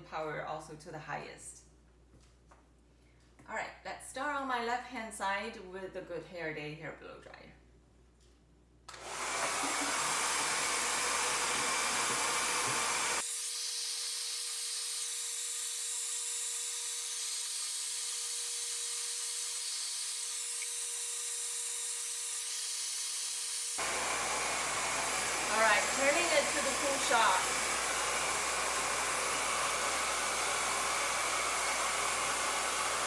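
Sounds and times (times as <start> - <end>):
hair dryer blowing: 8.9 - 13.3, 23.7 - 33.0.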